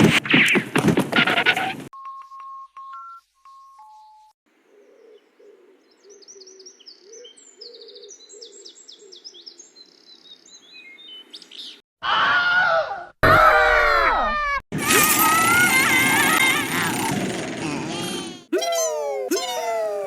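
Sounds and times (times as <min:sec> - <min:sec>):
songbirds chirping and trilling: 0:02.7 - 0:11.8
loud falling cry: 0:12.0 - 0:20.0.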